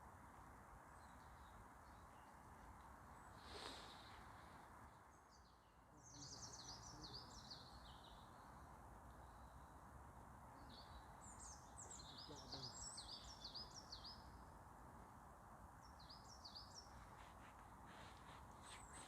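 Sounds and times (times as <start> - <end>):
steady outdoor hiss: 0.0 - 19.0
songbird chirping: 0.1 - 19.0.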